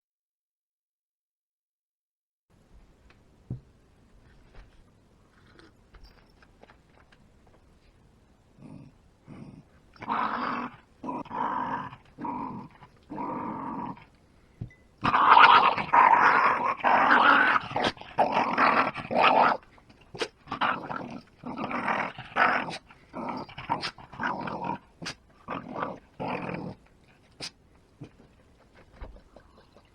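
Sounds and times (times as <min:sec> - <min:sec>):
dog snarling and growling: 0:08.6 - 0:14.1, 0:15.0 - 0:28.3.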